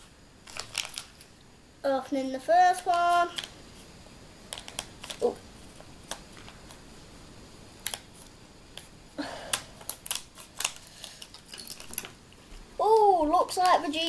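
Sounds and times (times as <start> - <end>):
foil pack crinkle: 0.4 - 1.4, 9.5 - 12.2.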